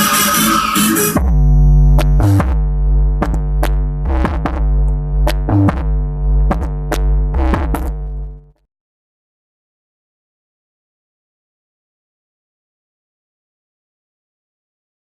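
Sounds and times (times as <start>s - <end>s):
electronic dance music: 0.0s - 8.4s
heavy sustained bass: 1.2s - 8.5s.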